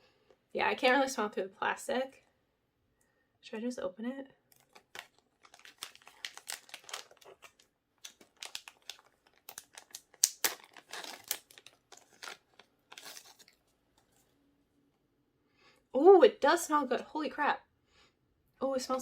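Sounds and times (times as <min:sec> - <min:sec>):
plastic wrapping crinkling and tearing: 0:04.5 - 0:14.2.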